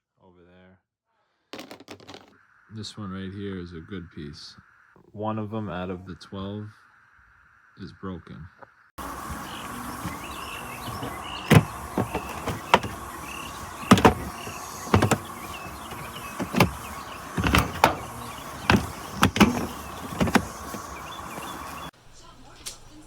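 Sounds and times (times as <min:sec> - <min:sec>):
background hum: 0:09.0 - 0:21.9
hard plastic knocks and clicks: 0:09.0 - 0:21.9.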